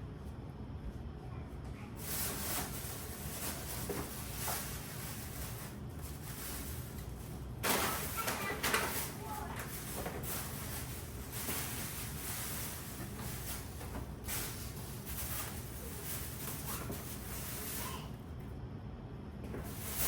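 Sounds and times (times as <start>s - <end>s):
steady low hum: 0.0s - 20.0s
groceries rustling: 1.9s - 18.3s, 19.4s - 20.0s.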